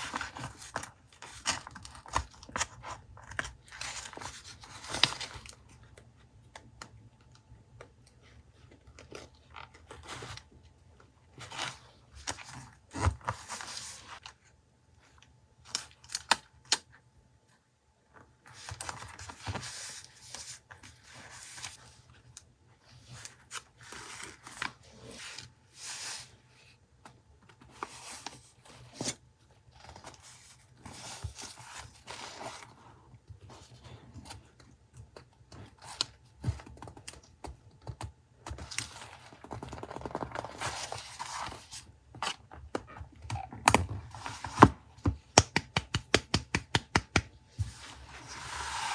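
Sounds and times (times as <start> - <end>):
paper rustling and crinkling: 47.5 - 48.9.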